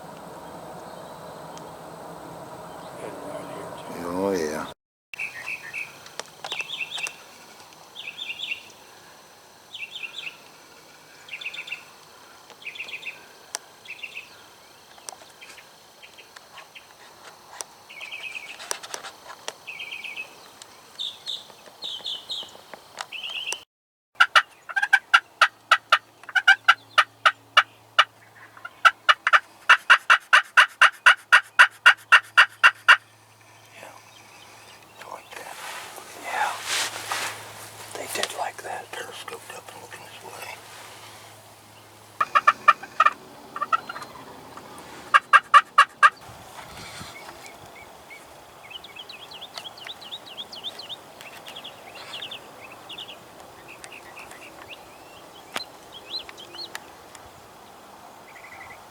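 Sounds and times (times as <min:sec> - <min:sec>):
wild turkey calling: 0:00.0 - 0:05.9, 0:24.2 - 0:41.5, 0:42.2 - 0:46.2.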